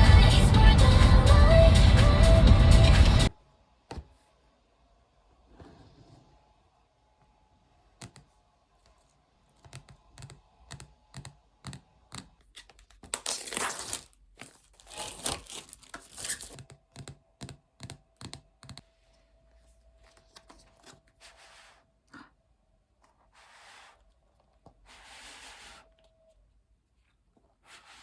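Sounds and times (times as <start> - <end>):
wrapping tearing and crinkling: 12.5 - 16.8.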